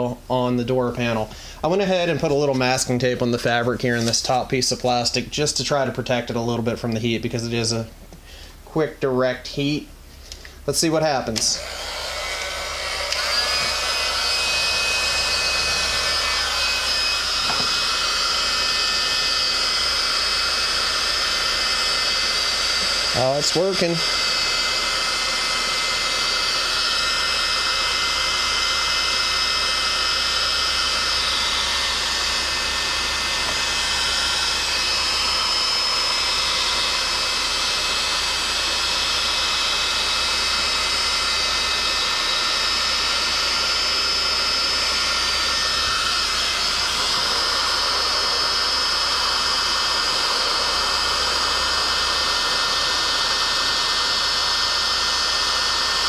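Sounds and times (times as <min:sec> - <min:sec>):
heat gun blowing air: 0:11.2 - 0:56.0.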